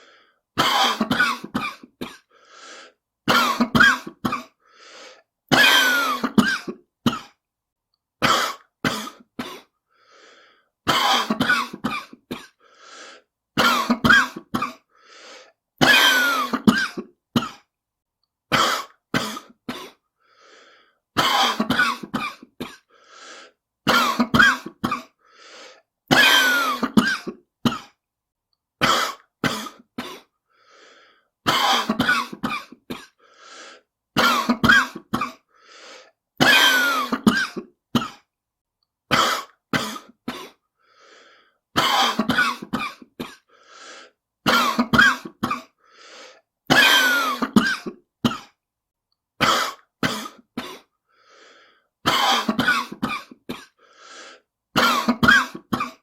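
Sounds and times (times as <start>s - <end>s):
person coughing: 0.6s - 2.4s, 3.3s - 4.6s, 5.5s - 7.4s, 8.2s - 9.8s, 10.8s - 12.6s, 13.6s - 14.9s, 15.8s - 17.7s, 18.5s - 20.0s, 21.2s - 23.0s, 23.9s - 25.2s, 26.1s - 28.0s, 28.8s - 30.4s, 31.4s - 33.2s, 34.2s - 35.5s, 36.4s - 38.3s, 39.1s - 40.6s, 41.8s - 43.5s, 44.4s - 45.8s, 46.7s - 48.6s, 49.4s - 50.9s, 52.0s - 53.8s, 54.8s - 56.0s.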